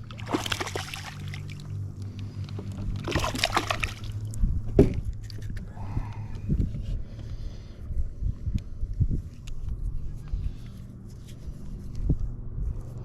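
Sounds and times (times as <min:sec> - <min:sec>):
water splashing beside kayak: 0:00.0 - 0:01.7, 0:03.0 - 0:04.2
steady low hum: 0:00.0 - 0:13.0.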